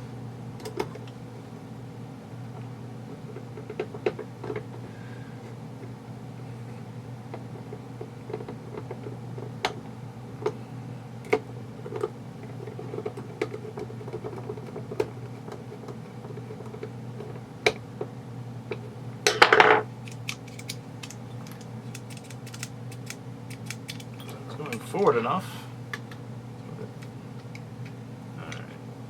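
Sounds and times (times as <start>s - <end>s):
steady low hum: 0.0s - 29.0s
clicks and taps of small parts: 20.0s - 24.3s.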